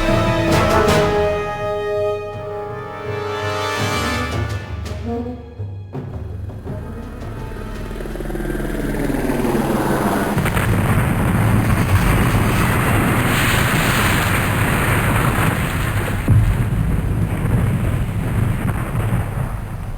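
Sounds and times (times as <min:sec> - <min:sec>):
helicopter engine and rotor rumble: 0:07.5 - 0:10.4.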